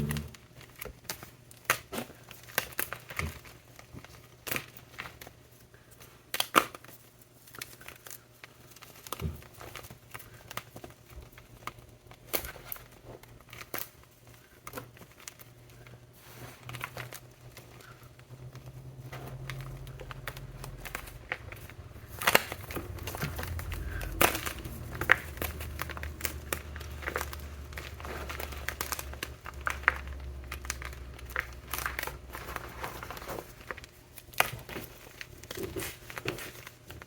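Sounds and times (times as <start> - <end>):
chalk blocks crunching: 15.8 - 37.0.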